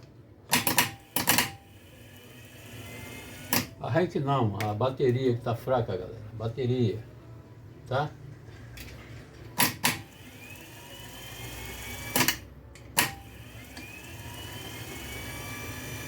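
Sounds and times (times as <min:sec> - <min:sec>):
starter motor whine: 0:13.2 - 0:16.0.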